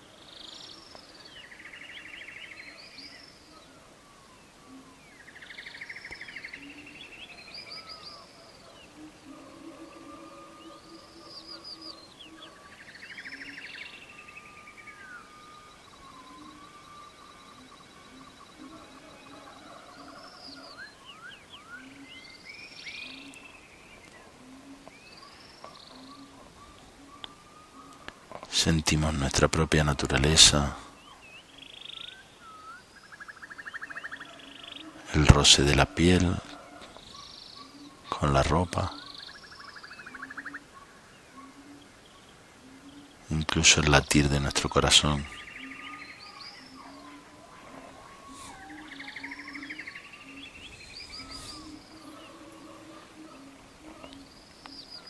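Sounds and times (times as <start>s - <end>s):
bird singing buzzy trill: 0.0s - 55.0s
faint hiss: 36.0s - 55.0s.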